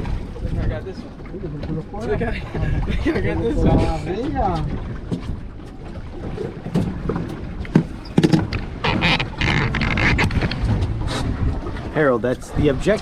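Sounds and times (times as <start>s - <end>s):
water around a boat: 0.0s - 13.0s
wind: 0.0s - 13.0s
sharp knocks on a boat: 4.2s - 11.9s.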